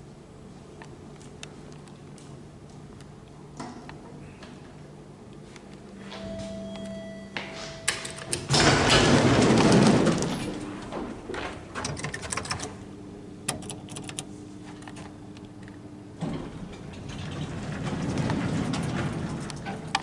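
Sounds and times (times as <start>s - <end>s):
steady low hum: 0.0s - 20.0s
lift door clicking and clattering: 7.6s - 12.8s, 13.5s - 20.0s.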